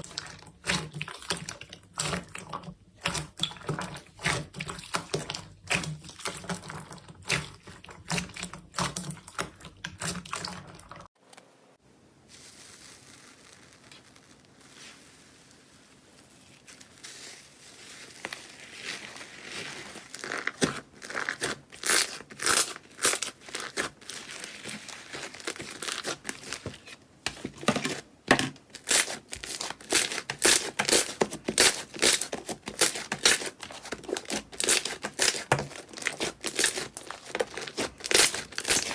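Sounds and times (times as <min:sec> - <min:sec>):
slime crackling and popping: 0:12.3 - 0:15.6, 0:16.6 - 0:26.8, 0:28.8 - 0:38.9.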